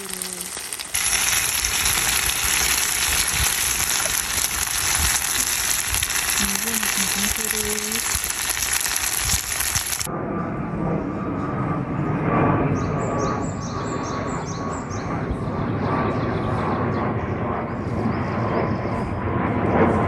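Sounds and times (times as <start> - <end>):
food sizzling in a hot pan: 0.0 - 10.1.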